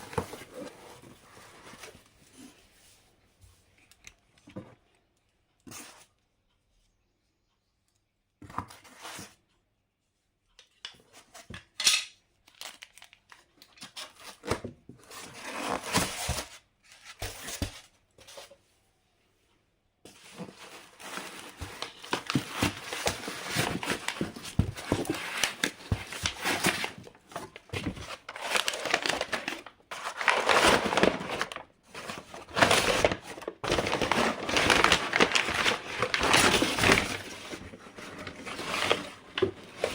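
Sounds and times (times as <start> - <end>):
packaging tearing and crinkling: 20.9 - 37.6.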